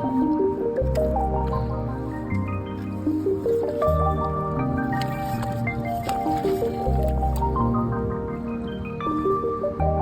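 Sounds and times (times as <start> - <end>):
melodic background music: 0.0 - 10.0.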